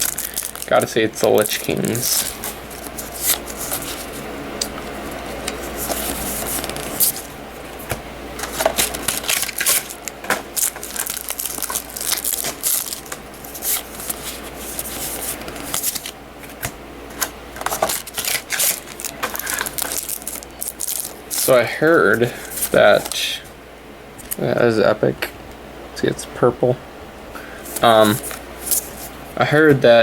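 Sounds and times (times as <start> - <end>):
cards flipping and clicking: 0.0 - 23.2
steady low hum: 0.0 - 30.0.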